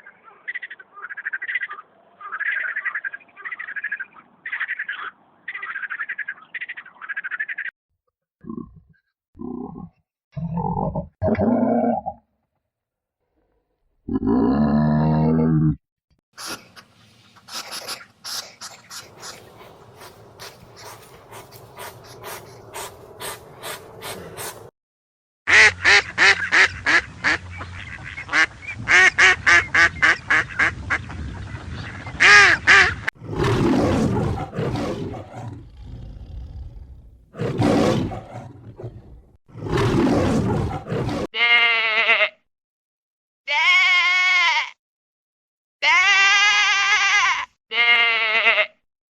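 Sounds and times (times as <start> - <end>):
rapid pitched animal calls: 0.0 - 7.7, 16.4 - 24.7
rough low animal calls: 18.6 - 24.7
short wavering bleats: 41.3 - 42.4, 43.5 - 44.8, 45.8 - 48.8.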